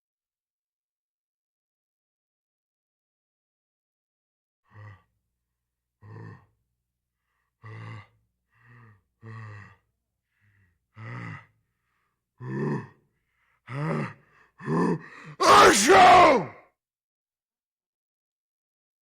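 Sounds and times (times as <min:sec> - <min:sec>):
man gasping before a sneeze: 0:15.1 - 0:16.5.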